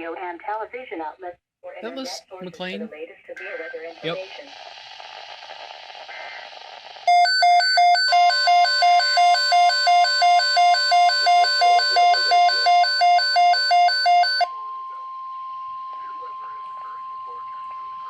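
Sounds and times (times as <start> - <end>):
rapid electronic alarm beeps: 7.0 - 18.0
steady warning tone: 7.1 - 18.0.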